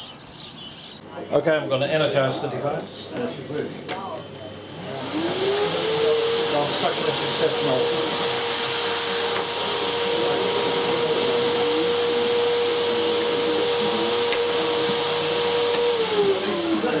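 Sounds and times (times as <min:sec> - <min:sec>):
vacuum cleaner running: 0:03.6 - 0:17.0.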